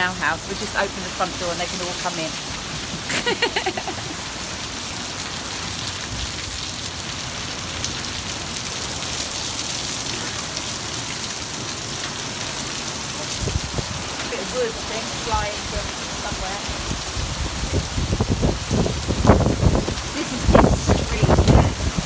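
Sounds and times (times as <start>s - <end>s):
heavy rain pouring: 0.0s - 22.0s.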